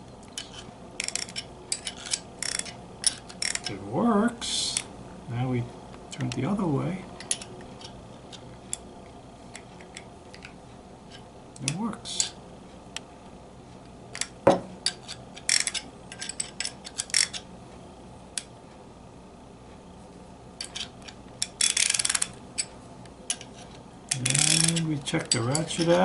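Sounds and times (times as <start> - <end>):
ratchet pawl clicks: 0.4 - 3.7, 21.4 - 22.7, 24.1 - 26.0
metal clicks and clinks: 24.1 - 26.0.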